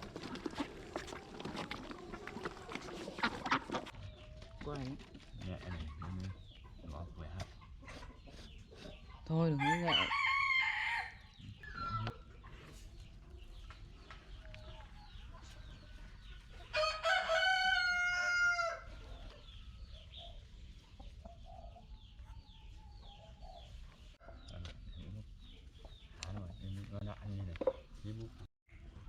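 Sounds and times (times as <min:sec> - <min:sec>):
chickens clucking: 0:00.0 - 0:10.4, 0:11.2 - 0:29.0
rooster crowing: 0:09.6 - 0:11.2, 0:16.7 - 0:18.9.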